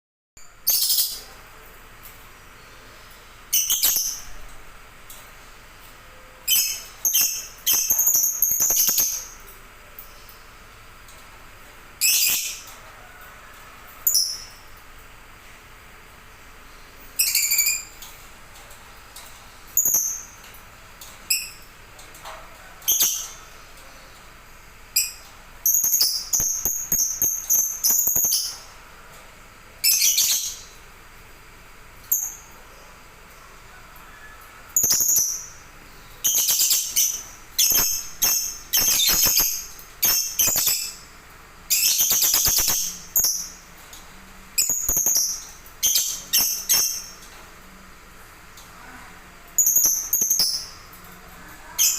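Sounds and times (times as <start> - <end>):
songbird singing trills: 36.2 - 41.1, 41.7 - 43.6.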